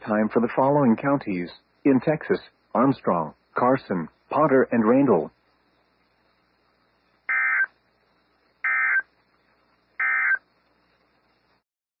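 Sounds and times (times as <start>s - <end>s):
digital data tone bursts: 7.3s - 7.8s, 8.6s - 9.1s, 10.0s - 10.4s.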